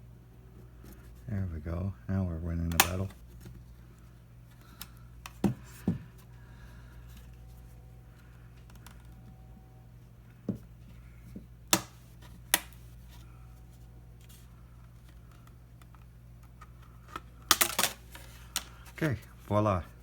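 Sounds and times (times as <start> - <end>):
low steady hum: 0.0 - 20.0
plastic snaps: 2.7 - 3.2, 11.7 - 12.8.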